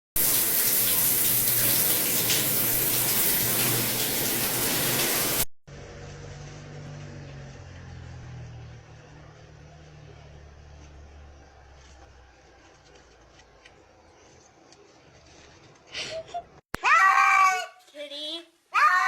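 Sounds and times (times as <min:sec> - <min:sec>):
running water rushing: 0:00.2 - 0:05.5.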